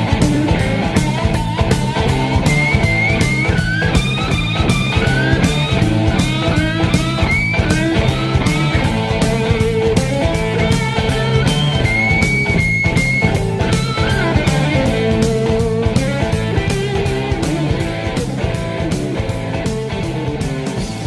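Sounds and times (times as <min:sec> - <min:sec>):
lead guitar bending notes: 0:00.0 - 0:21.0
rock music: 0:00.0 - 0:21.0
steady drum beat: 0:00.0 - 0:21.0.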